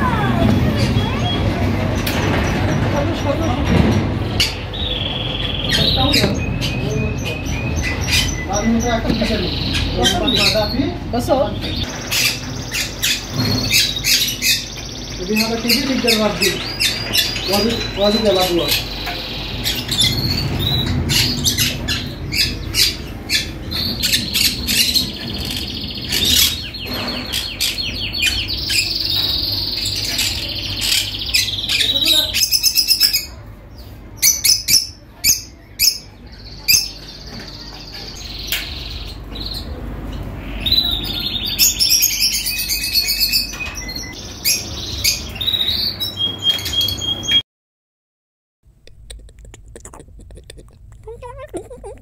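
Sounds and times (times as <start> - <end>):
caged birds chirping: 0.0 - 47.4, 48.9 - 52.0.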